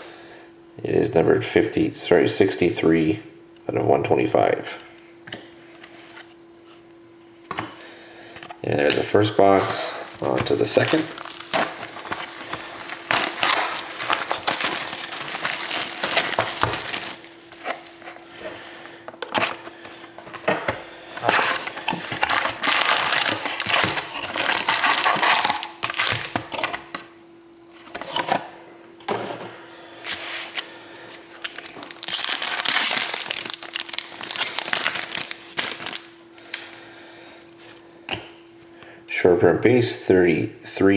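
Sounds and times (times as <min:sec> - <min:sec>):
faint steady hum: 0:00.0 - 0:40.9
plastic wrapping crinkling and tearing: 0:09.6 - 0:18.1, 0:21.2 - 0:26.8, 0:31.4 - 0:36.7.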